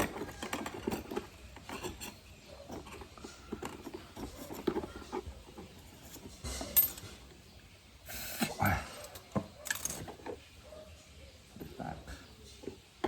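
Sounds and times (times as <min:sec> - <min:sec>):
small parts clicking and scratching: 0:00.0 - 0:07.4, 0:08.4 - 0:10.5.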